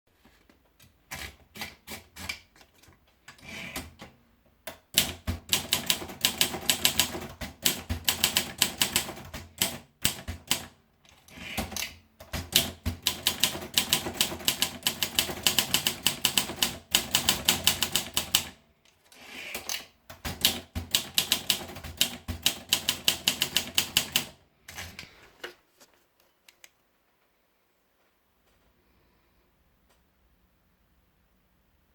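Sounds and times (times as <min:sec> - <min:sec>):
manual typewriter typing: 0:04.9 - 0:18.6, 0:19.2 - 0:25.0.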